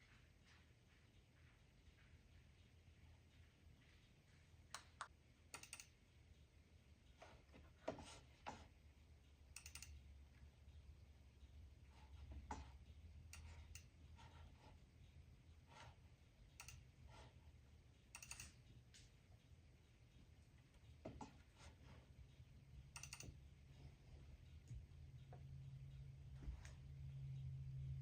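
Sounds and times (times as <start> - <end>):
low steady hum: 0.0 - 28.0
computer mouse and keyboard clicking: 4.8 - 6.0, 9.5 - 10.0, 12.2 - 14.7, 15.7 - 17.4, 18.1 - 19.1, 22.9 - 23.4.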